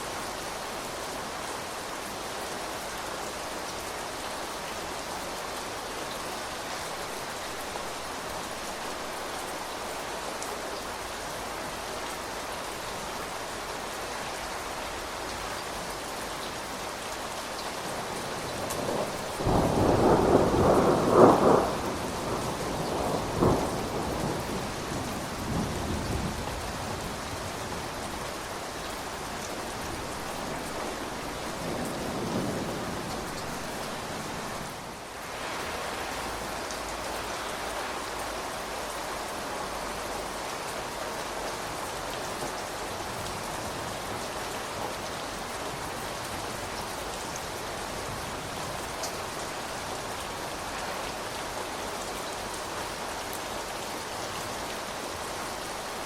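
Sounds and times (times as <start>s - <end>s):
steady rain falling: 0.0s - 56.0s
thunder clap and rumble: 18.5s - 27.0s.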